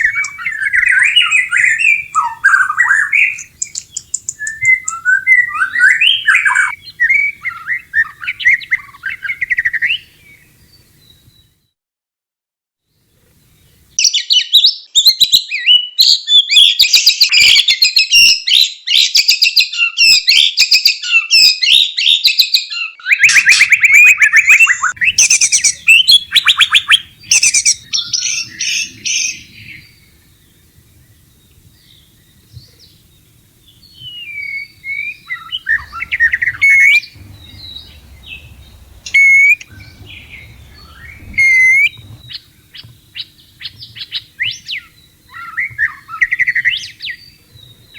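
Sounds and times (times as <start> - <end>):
bird singing fast whistles: 0.0 - 11.5, 23.1 - 47.9.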